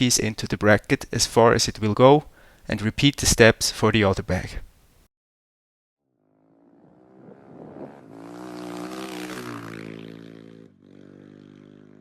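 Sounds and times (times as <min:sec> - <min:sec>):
motorcycle engine running: 0:06.4 - 0:12.0.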